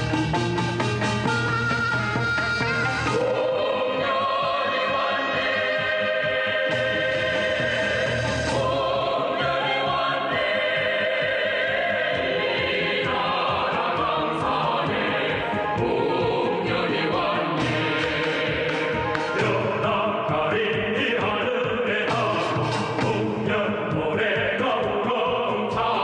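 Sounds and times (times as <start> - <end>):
instrumental accompaniment: 0.0 - 26.0
voices singing held notes: 1.6 - 26.0.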